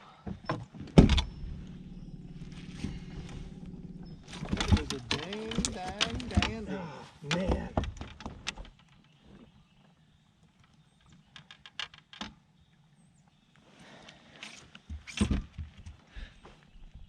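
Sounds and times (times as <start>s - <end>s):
loud thump: 1.0s - 1.7s
light taps and clicks: 4.4s - 6.6s.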